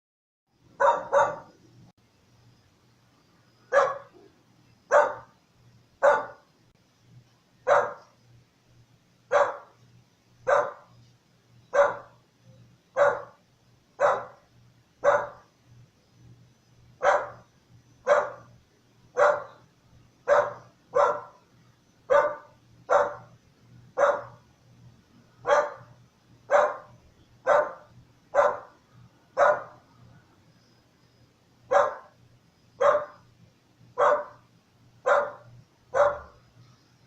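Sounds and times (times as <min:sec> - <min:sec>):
dog barking: 0:00.8 - 0:01.6, 0:03.7 - 0:04.3, 0:04.9 - 0:05.3, 0:06.0 - 0:06.4, 0:07.6 - 0:08.1, 0:09.3 - 0:09.8, 0:10.5 - 0:11.0, 0:11.7 - 0:12.2, 0:13.0 - 0:13.4, 0:14.0 - 0:14.4, 0:15.0 - 0:15.5, 0:17.0 - 0:18.5, 0:19.2 - 0:19.6, 0:20.2 - 0:21.4, 0:22.1 - 0:23.4, 0:24.0 - 0:24.4, 0:25.4 - 0:28.8, 0:29.4 - 0:29.8, 0:31.7 - 0:32.2, 0:32.8 - 0:33.2, 0:34.0 - 0:34.4, 0:35.0 - 0:36.4.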